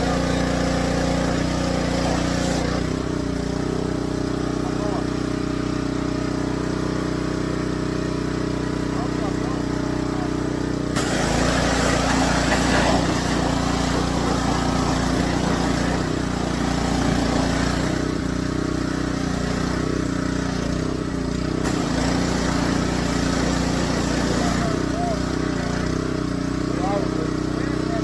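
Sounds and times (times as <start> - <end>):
high-pressure water spray hiss: 0.0 - 3.0, 10.9 - 25.8
pressure washer engine running: 0.0 - 28.0.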